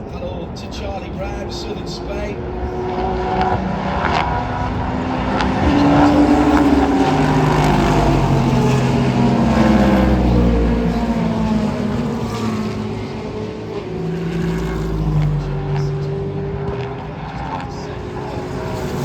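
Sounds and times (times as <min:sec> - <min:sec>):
race cars passing at speed: 0:00.0 - 0:19.0.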